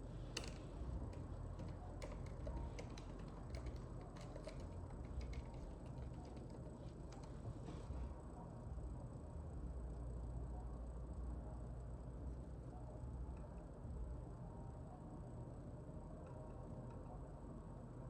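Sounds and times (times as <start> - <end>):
steady low hum: 0.0 - 18.0
mouse and keyboard clicks: 0.3 - 7.4.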